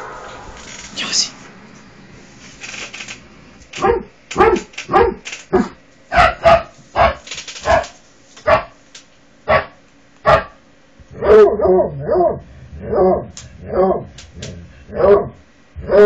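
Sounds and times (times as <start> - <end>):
dog barking: 3.8 - 8.8, 9.5 - 10.6, 11.2 - 14.1, 14.9 - 16.0.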